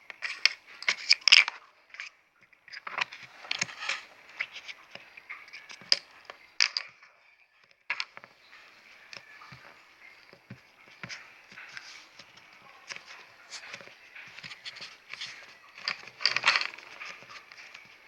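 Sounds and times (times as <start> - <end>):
hands handling play dough: 0.0 - 7.1, 7.9 - 18.0
plastic packaging rustling: 2.7 - 7.0, 7.9 - 18.0.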